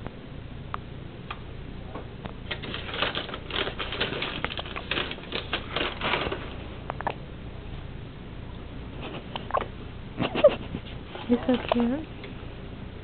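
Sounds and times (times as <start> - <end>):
crackling and rustling clicks: 2.2 - 7.2, 11.2 - 12.4.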